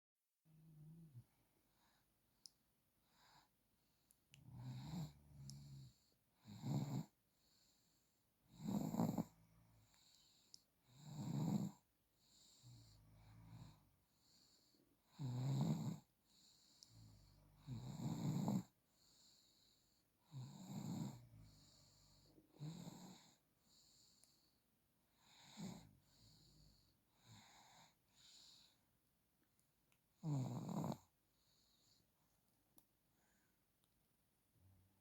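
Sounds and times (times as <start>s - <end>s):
baby snoring: 4.6s - 7.1s, 8.5s - 9.3s, 10.9s - 11.8s, 15.1s - 16.1s, 17.6s - 18.7s, 20.3s - 23.4s, 30.2s - 31.1s.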